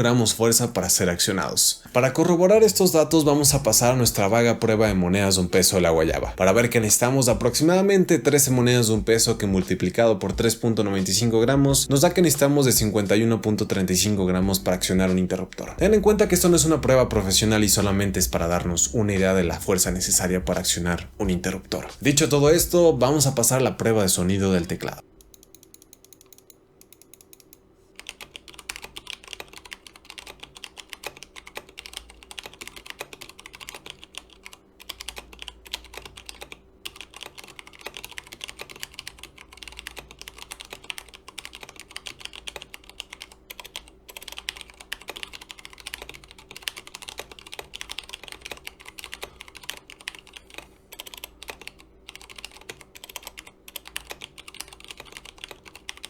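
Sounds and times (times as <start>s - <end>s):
mechanical keyboard typing: 24.6s - 56.0s.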